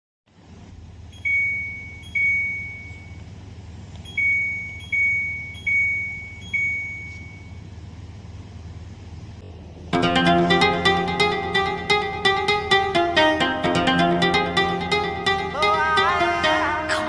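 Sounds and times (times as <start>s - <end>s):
air conditioner beeping: 0.4s - 17.0s
low hum: 9.3s - 17.0s.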